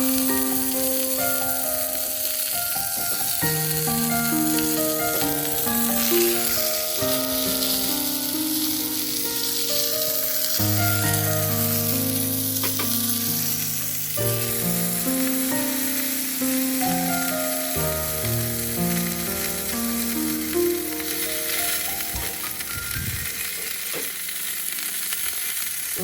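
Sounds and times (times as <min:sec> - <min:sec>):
food sizzling in a pan: 0:00.0 - 0:26.0
slow held chords music: 0:03.3 - 0:23.5.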